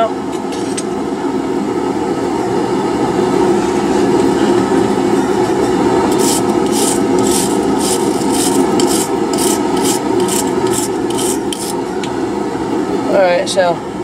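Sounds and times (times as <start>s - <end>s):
scraping strokes on steel bar: 6.1s - 11.8s.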